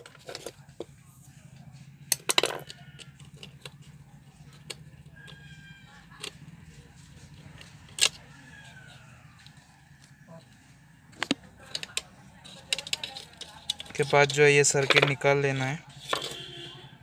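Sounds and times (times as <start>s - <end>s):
plastic clicks and knocks: 11.2s - 12.1s.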